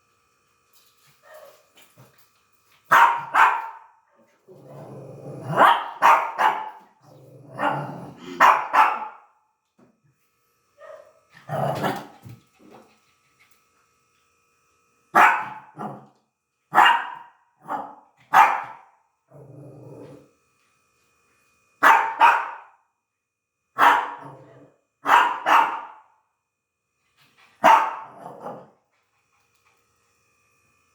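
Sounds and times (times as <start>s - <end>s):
dog barking sharply: 2.9s - 3.9s, 8.4s - 9.3s, 25.1s - 26.0s, 27.6s - 28.0s
dog growling: 4.5s - 5.7s, 7.0s - 8.4s, 19.3s - 20.3s.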